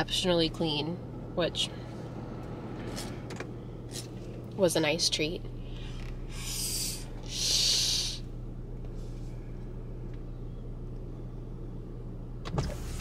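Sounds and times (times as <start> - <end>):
car cabin hum: 0.0 - 13.0
short hissing swishes: 6.3 - 8.2.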